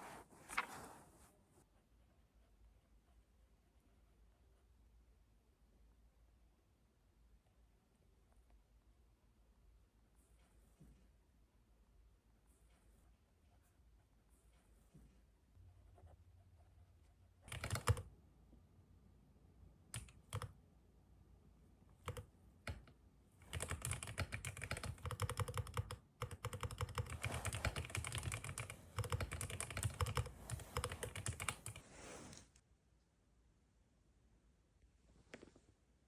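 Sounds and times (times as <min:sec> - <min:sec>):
typing on computer keyboard: 0:17.4 - 0:18.1, 0:19.9 - 0:20.6, 0:22.0 - 0:31.8.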